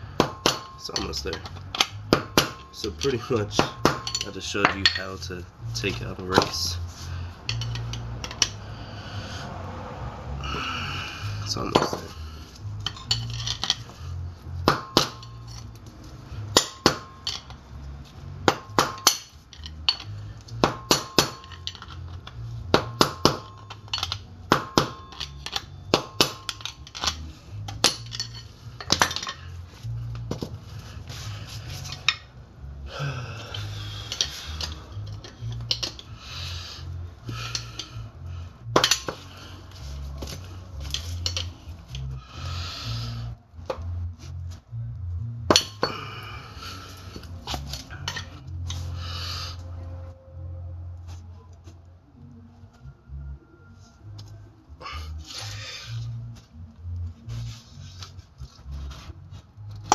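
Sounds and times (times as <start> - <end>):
hammer striking metal: 0.2 - 1.2, 1.8 - 5.2, 16.5 - 17.4, 20.6 - 21.6, 22.7 - 26.8.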